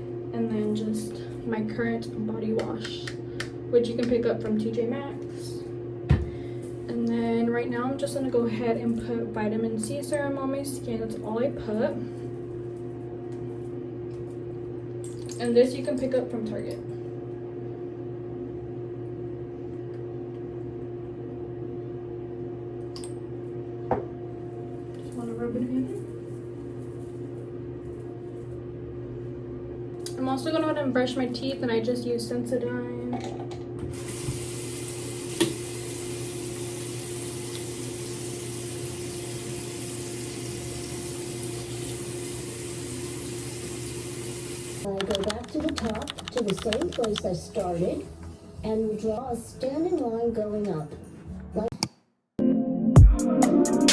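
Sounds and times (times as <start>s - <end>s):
sink tap running: 33.3s - 47.2s.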